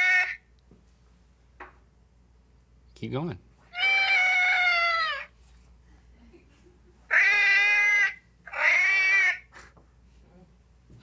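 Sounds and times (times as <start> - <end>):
recorded cat meowing: 3.7 - 5.3.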